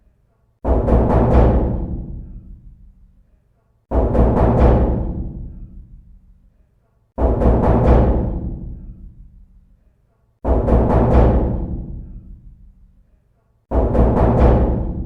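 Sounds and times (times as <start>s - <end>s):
heavy knocking on a door: 0.6s - 2.6s, 3.9s - 5.9s, 7.2s - 9.2s, 10.4s - 12.5s, 13.7s - 15.0s.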